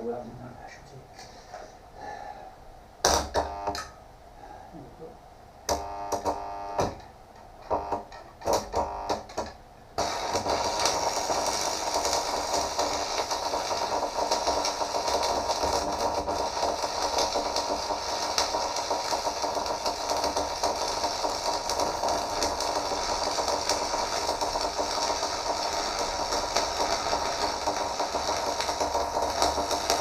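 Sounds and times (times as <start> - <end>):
welding arc hissing: 7.6 - 30.0.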